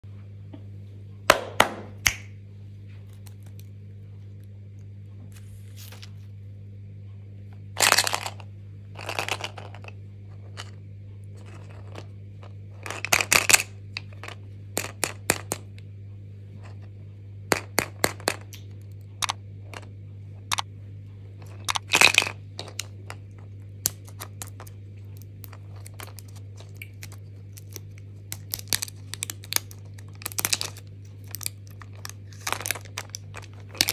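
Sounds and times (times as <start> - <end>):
steady low hum: 0.0 - 33.9
plastic packaging crinkling and tearing: 25.7 - 33.9.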